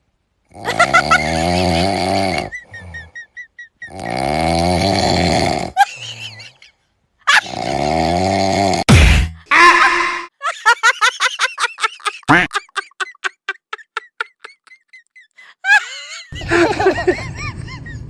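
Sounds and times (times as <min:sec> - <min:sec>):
voice-like sound: 0:09.5 - 0:10.3.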